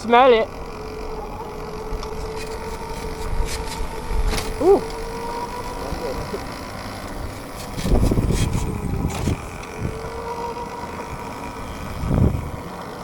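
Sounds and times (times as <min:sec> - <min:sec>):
steady high whine: 0:00.0 - 0:13.0
wind buffeting microphone: 0:00.5 - 0:12.8.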